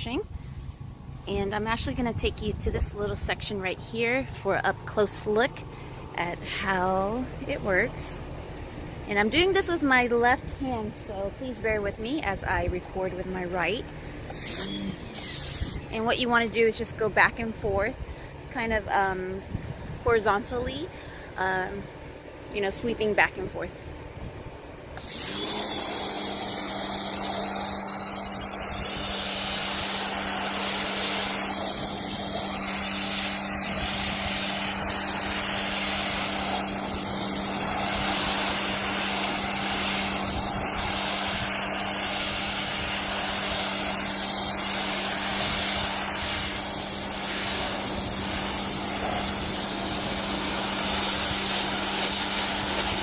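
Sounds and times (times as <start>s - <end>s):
low motor hum: 0.0s - 53.0s
pressure washer spray hissing: 14.3s - 16.2s, 25.0s - 53.0s.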